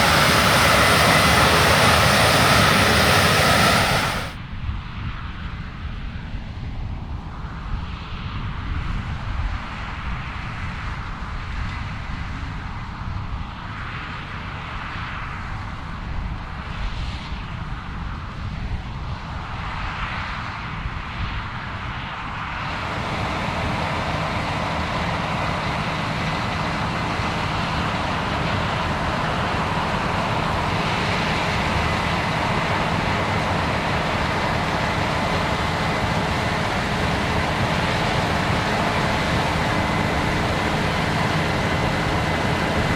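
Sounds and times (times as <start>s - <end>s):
combine harvester rumble: 0.0s - 4.4s, 22.7s - 42.9s
thin high machine whine: 0.0s - 4.4s, 22.7s - 29.7s.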